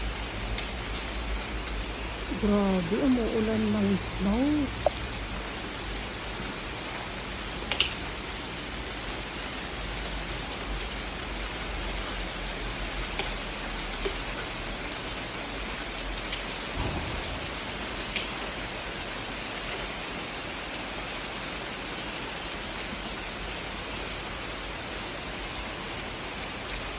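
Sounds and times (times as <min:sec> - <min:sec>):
steady rain hiss: 0:00.0 - 0:26.9
water drips: 0:00.3 - 0:06.1, 0:12.8 - 0:14.9.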